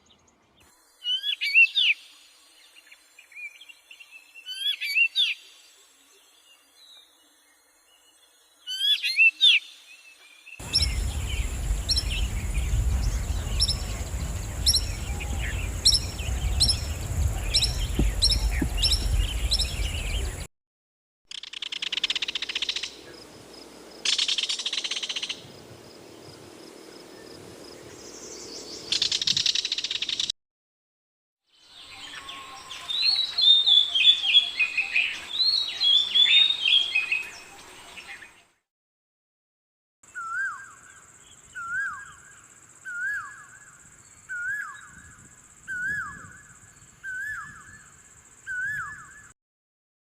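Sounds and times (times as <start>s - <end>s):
faint high insect drone: 0.7s - 20.5s, 21.3s - 30.3s, 40.1s - 49.3s
bird calling: 10.6s - 20.5s.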